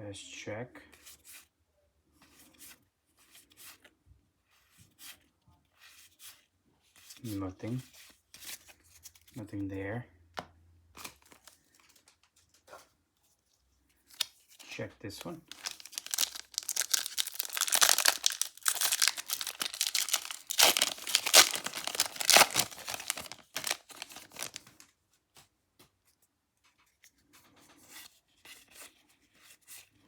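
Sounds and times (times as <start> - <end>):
foil wrapper crinkling and tearing: 15.5 - 24.8.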